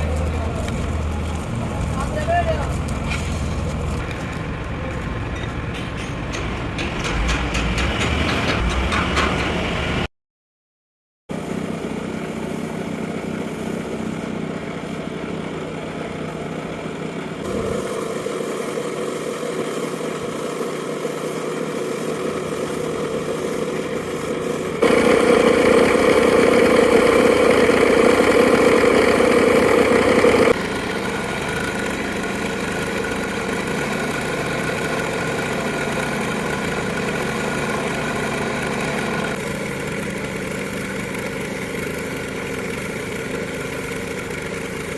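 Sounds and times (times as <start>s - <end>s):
machinery running: 15.7s - 44.9s.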